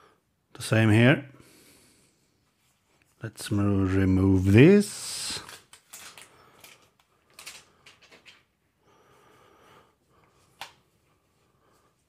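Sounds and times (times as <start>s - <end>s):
packaging rustling: 4.3s - 8.6s.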